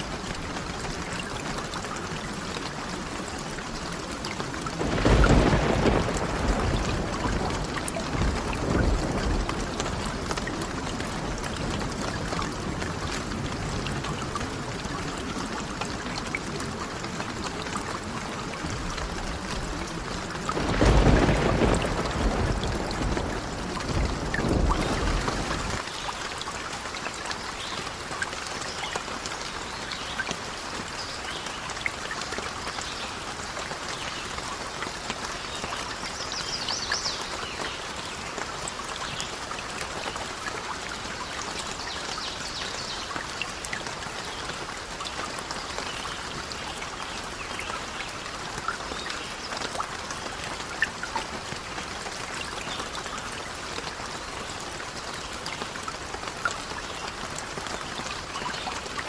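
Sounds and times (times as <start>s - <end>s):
small crackles and ticks: 0.0s - 59.0s
steady rain falling: 0.0s - 59.0s
low thunder rumble: 4.6s - 14.2s, 18.6s - 25.8s.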